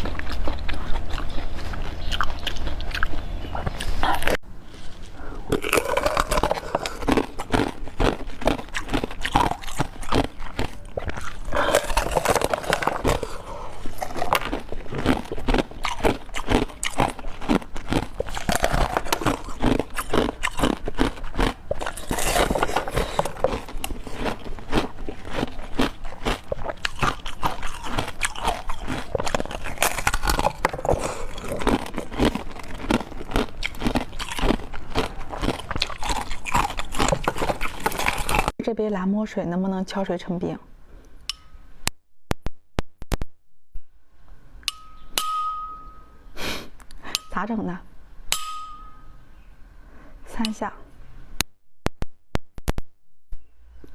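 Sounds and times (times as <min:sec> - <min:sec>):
crunchy chewing: 0:00.0 - 0:38.6.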